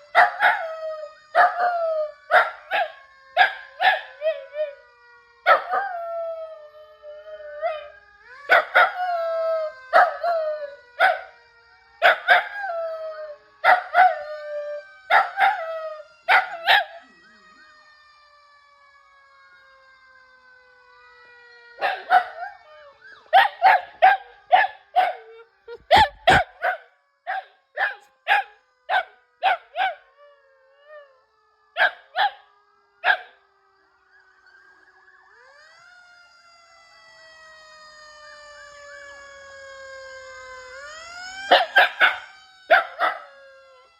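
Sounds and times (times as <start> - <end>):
electronic siren wail: 0.0 - 43.9
dog yapping: 23.4 - 30.0, 41.5 - 43.3.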